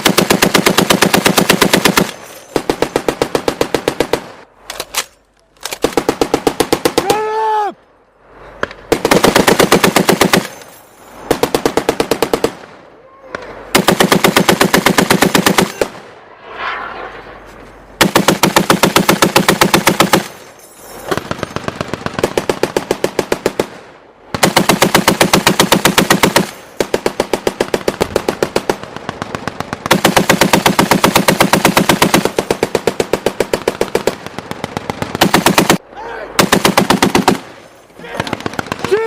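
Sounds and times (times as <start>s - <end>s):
machine gun firing bursts: 0.0s - 4.3s, 5.8s - 7.0s, 8.9s - 10.5s, 11.3s - 12.6s, 13.7s - 16.0s, 18.0s - 20.4s, 21.2s - 35.8s, 36.4s - 37.5s, 38.2s - 39.0s.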